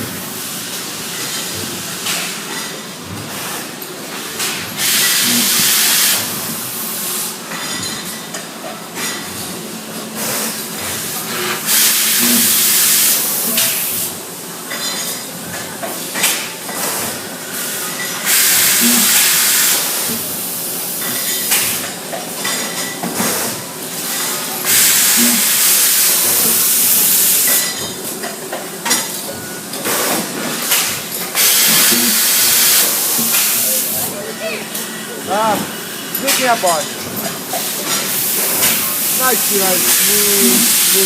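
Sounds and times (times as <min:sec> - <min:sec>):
hissing air bursts: 0:31.4 - 0:34.0, 0:37.6 - 0:41.0.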